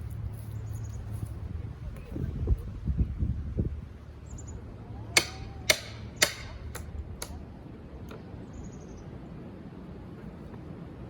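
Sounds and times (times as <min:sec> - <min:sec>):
hammer striking wooden pallet: 0:05.2 - 0:07.4.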